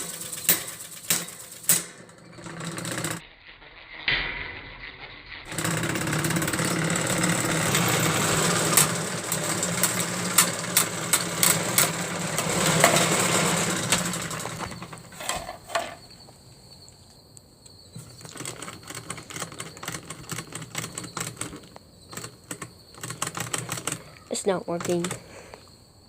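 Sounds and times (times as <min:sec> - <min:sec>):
table fan hum and rattle: 0:00.0 - 0:03.2, 0:05.5 - 0:16.8, 0:17.9 - 0:25.5.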